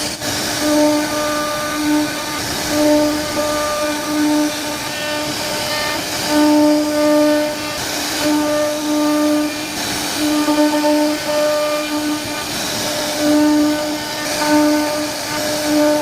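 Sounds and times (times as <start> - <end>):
hiss of wood cutting: 0.0 - 16.0
router spindle whining: 0.0 - 16.0.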